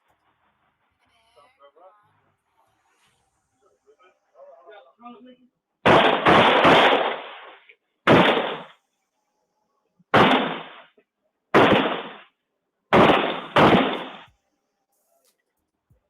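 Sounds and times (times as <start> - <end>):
gunshots: 5.8 - 8.8, 10.1 - 12.3, 12.9 - 14.3.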